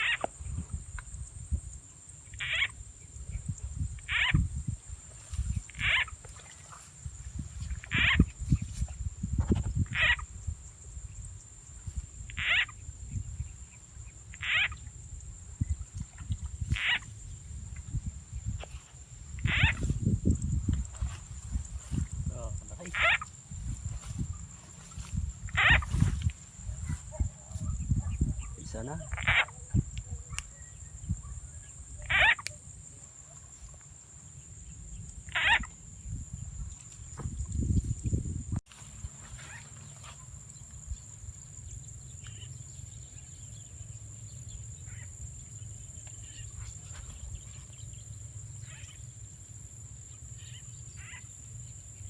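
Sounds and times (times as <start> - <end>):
frog calls: 0.0 - 1.2, 1.9 - 41.0, 44.8 - 45.2, 48.6 - 49.2, 50.0 - 51.8
microphone rumbling: 7.0 - 11.4, 15.2 - 30.4, 35.6 - 38.6.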